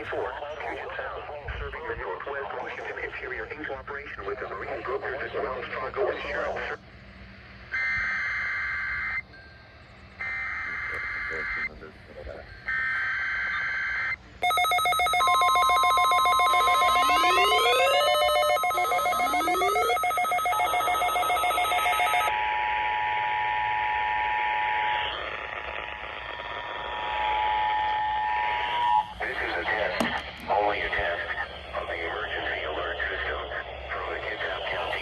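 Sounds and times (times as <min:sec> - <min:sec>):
pulsing electronic alert beep: 0:14.4 - 0:22.3
two-tone attention signal: 0:14.4 - 0:22.3.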